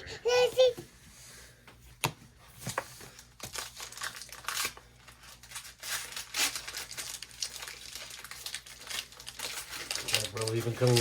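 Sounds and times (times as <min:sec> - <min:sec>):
foil wrapper crinkling and tearing: 0:03.1 - 0:11.0.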